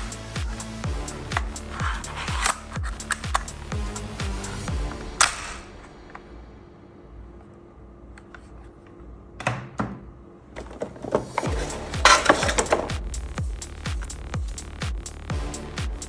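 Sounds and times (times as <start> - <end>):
electronic dance beat: 0.0 - 6.1, 11.4 - 16.0.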